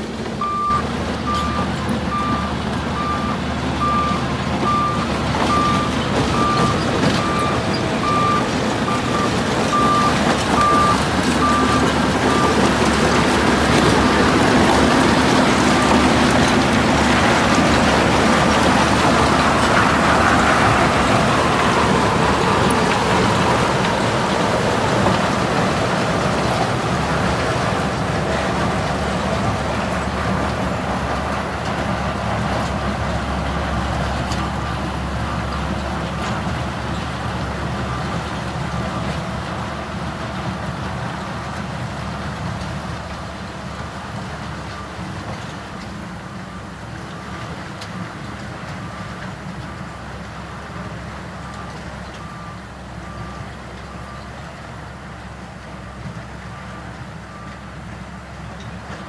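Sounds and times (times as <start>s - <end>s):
heavy machinery diesel engine: 0.0s - 59.0s
reversing alarm beeping: 0.4s - 28.0s.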